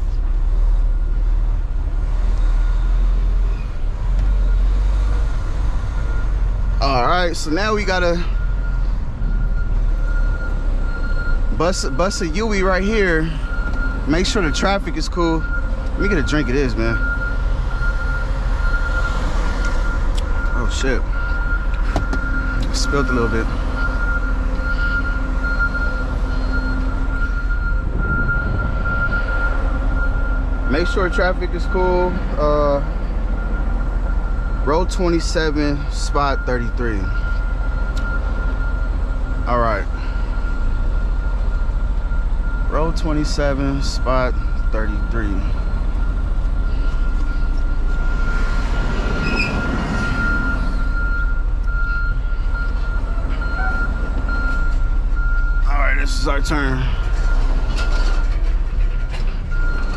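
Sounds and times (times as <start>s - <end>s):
diesel truck engine rumbling: 0.0s - 59.9s
vehicle passing: 45.4s - 55.0s.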